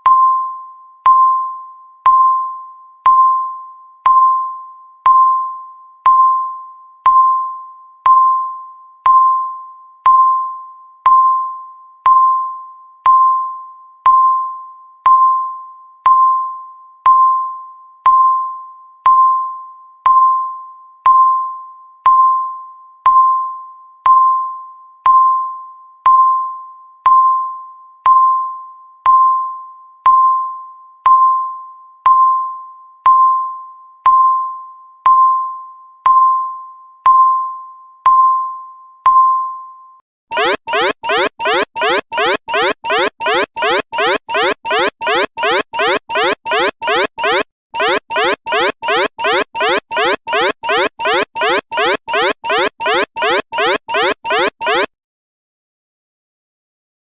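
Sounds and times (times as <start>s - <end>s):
timer ticking with ringing tone: 40.3s - 54.9s.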